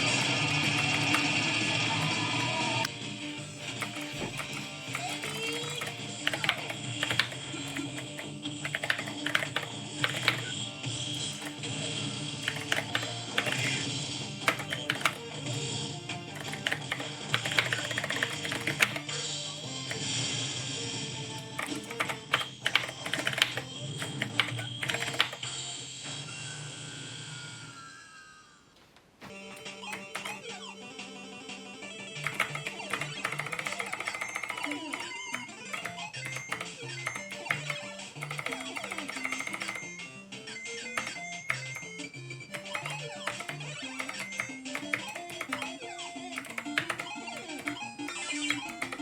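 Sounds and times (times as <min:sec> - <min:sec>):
mechanical keyboard keys clacking: 0:00.0 - 0:02.6, 0:03.7 - 0:11.7, 0:12.3 - 0:19.1, 0:21.4 - 0:25.5, 0:29.4 - 0:30.5, 0:32.2 - 0:40.0, 0:40.8 - 0:49.0
background music: 0:00.0 - 0:49.0.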